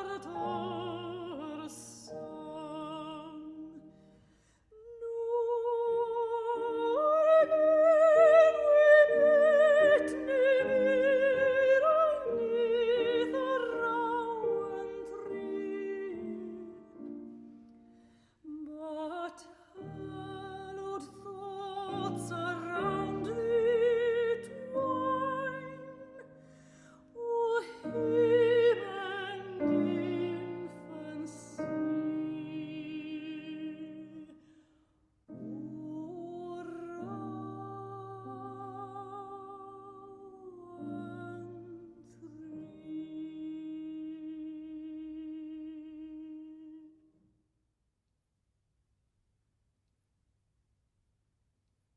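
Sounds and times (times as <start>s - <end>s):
opera voice singing with vibrato: 0.0s - 3.9s, 4.8s - 17.3s, 18.5s - 34.4s, 35.4s - 47.0s
piano chords: 19.8s - 34.3s.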